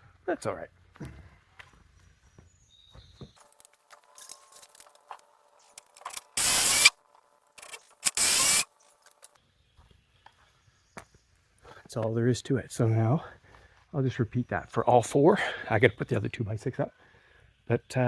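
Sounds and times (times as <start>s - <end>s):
impact driver driving bolt: 5.8s - 6.9s, 7.6s - 8.7s.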